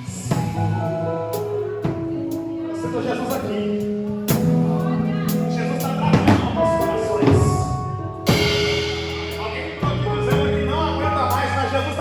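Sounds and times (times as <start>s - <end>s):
drum kit: 0.0s - 12.0s
keyboard chords: 0.0s - 12.0s
cymbal crash: 7.4s - 10.1s.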